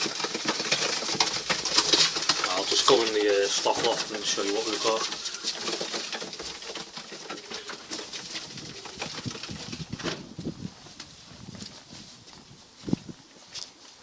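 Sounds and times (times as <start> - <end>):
pigeons cooing: 0.0 - 10.4
knocks and scuffles: 0.0 - 14.0.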